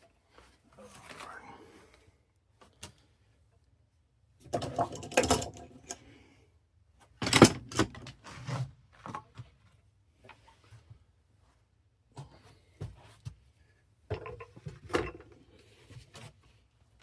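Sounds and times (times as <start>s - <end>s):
tools clattering and knocking: 4.5s - 6.0s, 7.2s - 8.2s, 14.1s - 15.5s.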